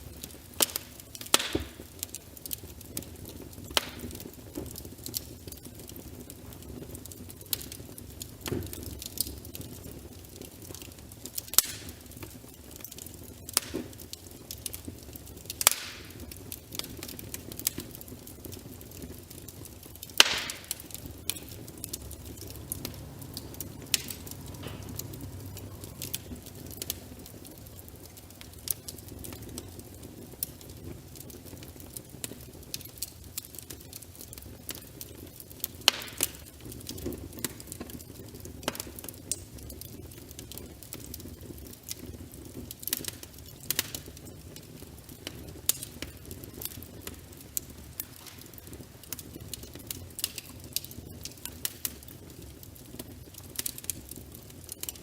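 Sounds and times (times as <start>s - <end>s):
wood fire crackling and popping: 0.0s - 55.0s
low steady rumble: 20.8s - 30.5s.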